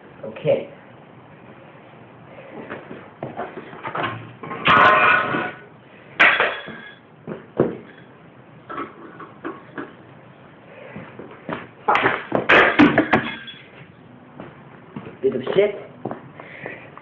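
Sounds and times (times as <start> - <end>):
metal clanks and knocks: 3.8 - 5.6, 11.9 - 13.7.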